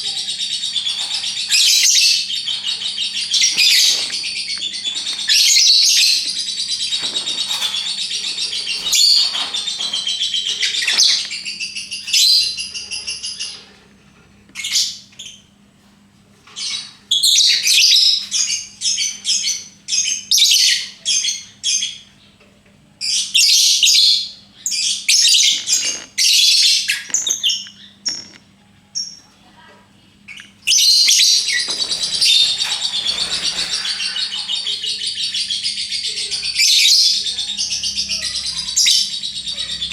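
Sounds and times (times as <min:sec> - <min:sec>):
bird chattering rapidly: 0:30.4 - 0:39.9.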